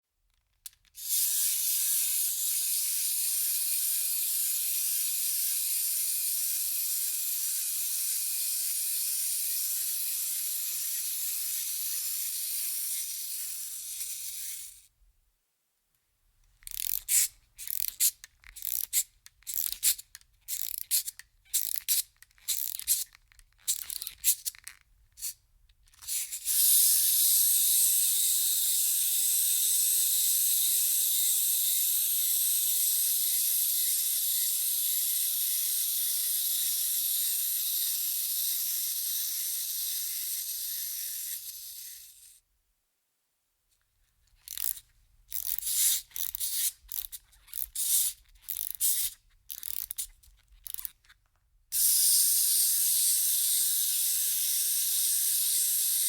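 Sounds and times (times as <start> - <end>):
clockwork toy whirring: 0.6 - 14.9, 16.6 - 42.4, 44.3 - 56.0
key winding rasps: 16.6 - 27.8, 44.4 - 51.1.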